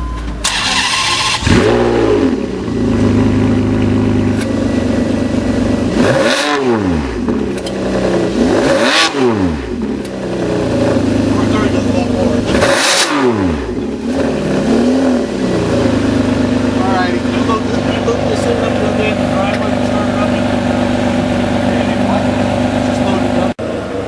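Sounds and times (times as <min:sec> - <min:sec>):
engine cranking: 0:00.4 - 0:01.8
engine idling: 0:00.4 - 0:06.1, 0:06.9 - 0:24.0
engine revving: 0:00.4 - 0:24.0.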